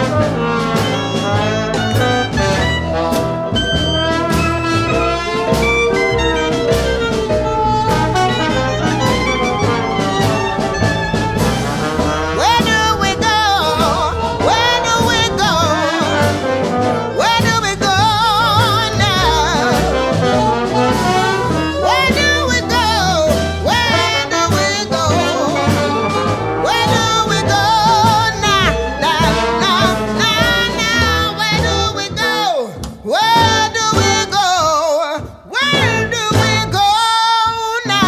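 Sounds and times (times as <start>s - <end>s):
steady bass line: 0.0s - 21.6s
brass instruments: 0.0s - 38.0s
person singing: 6.6s - 16.5s.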